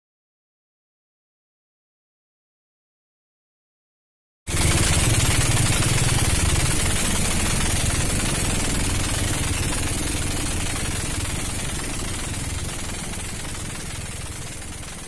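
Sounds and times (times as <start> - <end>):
boat engine rumbling: 4.5 - 15.0.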